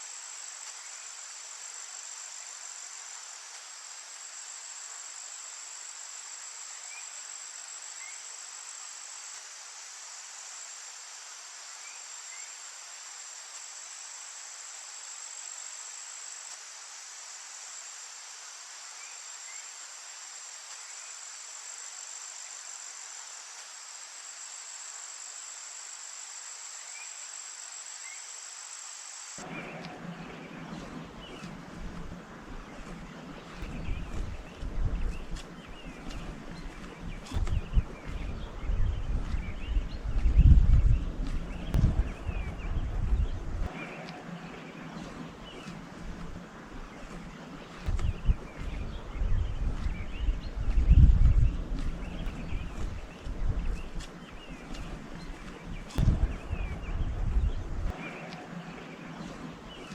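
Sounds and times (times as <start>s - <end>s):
insect chorus trilling: 0.0s - 59.9s
low rumble: 29.4s - 59.9s.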